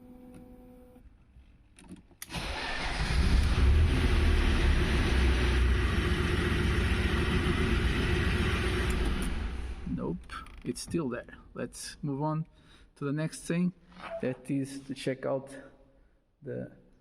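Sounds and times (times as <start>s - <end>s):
car engine starting and rumbling: 2.2s - 10.6s.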